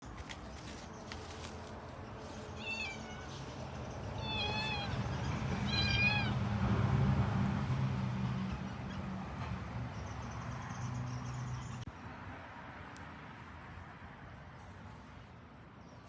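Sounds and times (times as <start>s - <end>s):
cat meowing: 2.6s - 6.4s.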